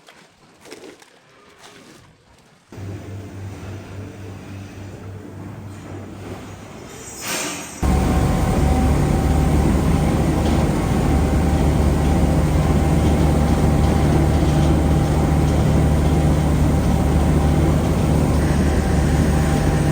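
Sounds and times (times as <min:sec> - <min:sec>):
farm machinery running: 0:07.8 - 0:19.9.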